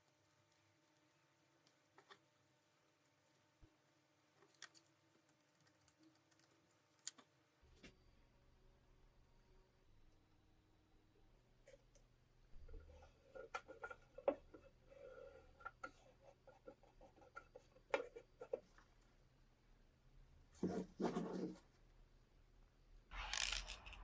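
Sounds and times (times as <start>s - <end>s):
small parts clicking and tapping: 4.4s - 7.3s.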